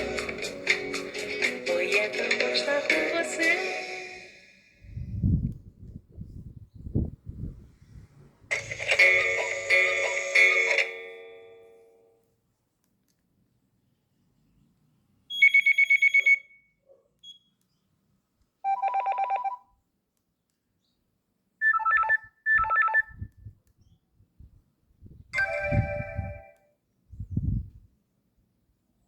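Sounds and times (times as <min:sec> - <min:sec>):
electronic phone ring tones: 0:15.4 - 0:16.4, 0:18.7 - 0:19.6, 0:21.6 - 0:23.1, 0:25.4 - 0:26.6.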